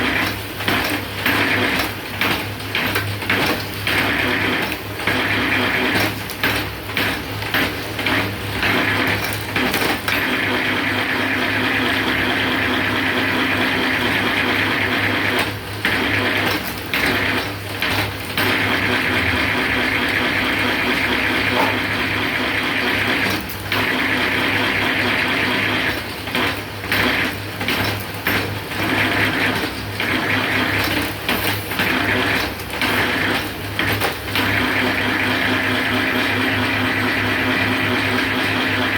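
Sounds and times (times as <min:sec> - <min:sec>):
machine motor humming: 0:18.5 - 0:25.9.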